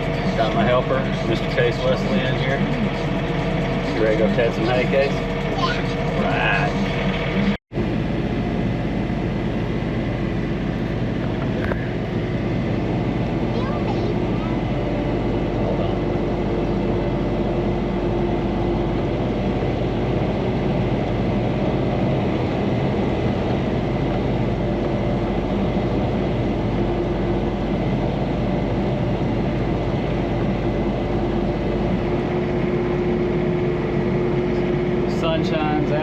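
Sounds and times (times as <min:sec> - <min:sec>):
tractor engine running under load: 0:00.0 - 0:36.0.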